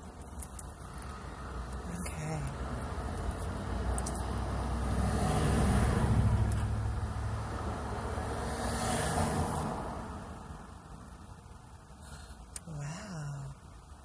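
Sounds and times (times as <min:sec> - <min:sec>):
road vehicle passing by: 0:00.8 - 0:11.1.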